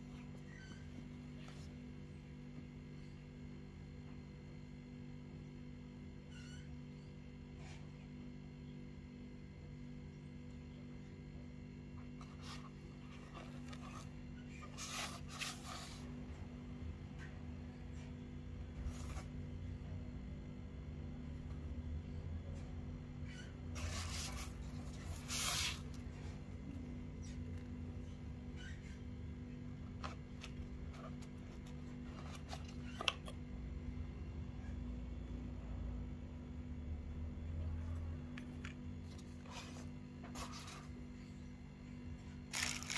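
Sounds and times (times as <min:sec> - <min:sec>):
steady low hum: 0:00.0 - 0:42.9
packaging rustling: 0:42.5 - 0:42.9.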